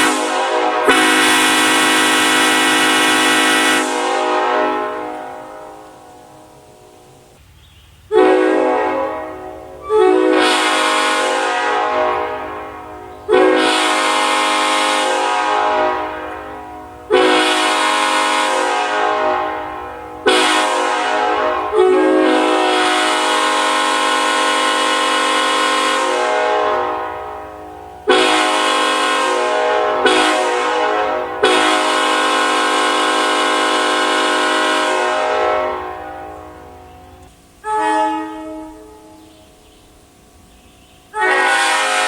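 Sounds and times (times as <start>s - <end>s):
locomotive horn blasts: 0.0s - 7.1s, 8.1s - 39.6s, 41.1s - 42.0s.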